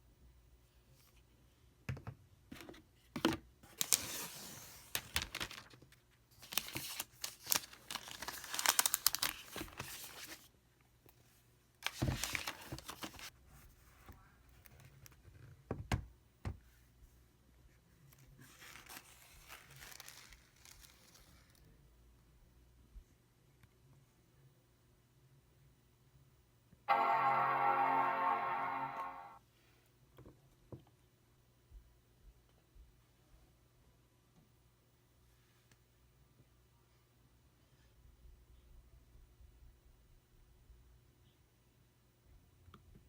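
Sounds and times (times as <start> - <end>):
packaging tearing and crinkling: 3.8 - 5.8, 6.4 - 10.4, 11.8 - 13.3, 18.5 - 21.6.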